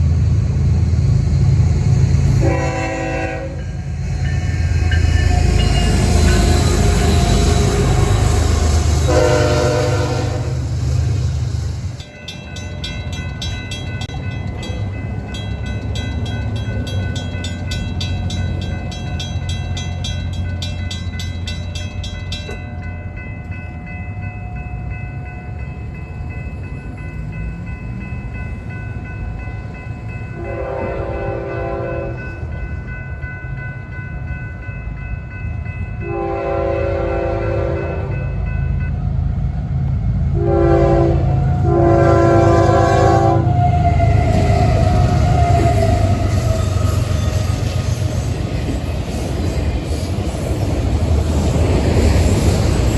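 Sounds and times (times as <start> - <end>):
freight train rumbling by: 0.0 - 52.9
locomotive air horn blasts: 2.3 - 3.8, 6.7 - 10.8, 30.4 - 32.2, 36.0 - 38.1, 40.4 - 46.0.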